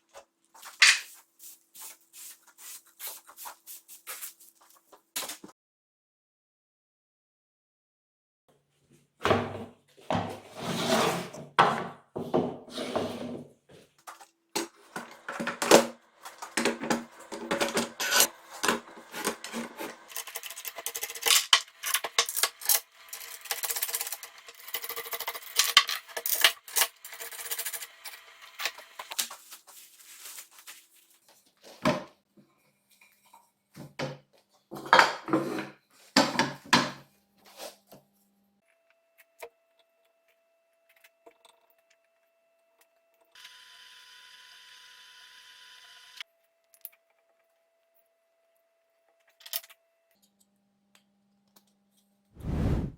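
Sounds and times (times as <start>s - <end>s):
scraping on wood: 10.1s - 13.5s.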